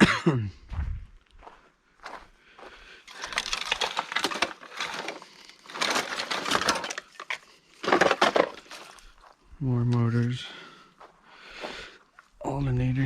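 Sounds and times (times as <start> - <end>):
scrap metal parts clattering: 3.1 - 9.0.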